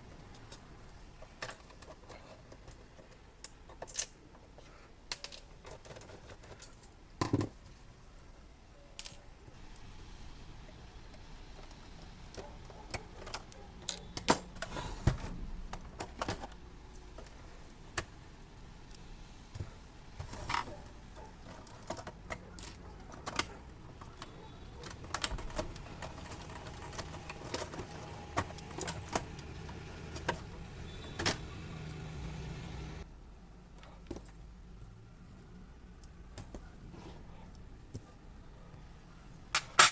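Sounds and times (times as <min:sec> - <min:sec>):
small hard parts clicking and rattling: 0:00.2 - 0:07.6, 0:11.0 - 0:18.1, 0:18.8 - 0:33.0.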